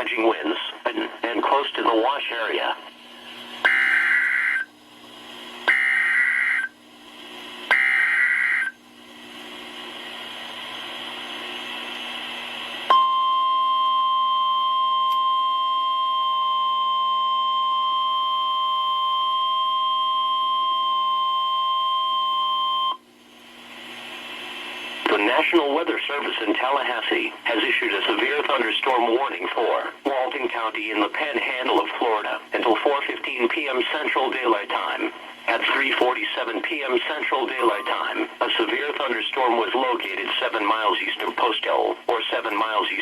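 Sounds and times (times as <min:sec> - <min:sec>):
radio hiss: 0:00.0 - 0:04.7, 0:24.0 - 0:43.0
steady warning alarm tone: 0:03.6 - 0:04.7, 0:05.6 - 0:06.8, 0:07.7 - 0:08.8, 0:11.4 - 0:23.0, 0:36.8 - 0:38.4.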